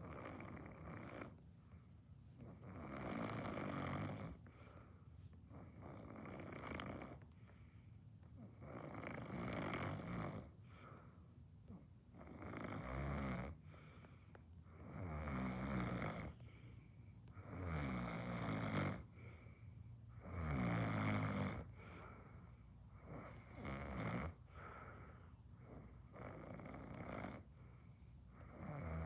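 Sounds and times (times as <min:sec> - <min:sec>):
quiet breathing: 0:00.0 - 0:12.4, 0:13.4 - 0:20.5, 0:21.2 - 0:29.0
person snoring loudly: 0:20.2 - 0:21.7, 0:28.5 - 0:29.0.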